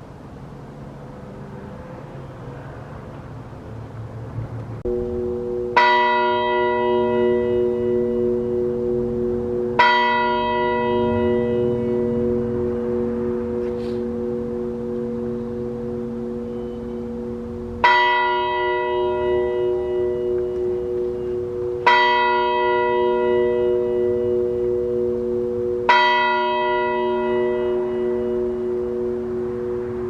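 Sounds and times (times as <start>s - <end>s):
steady hum: 3.4s - 17.9s
bell ringing: 4.9s - 24.6s.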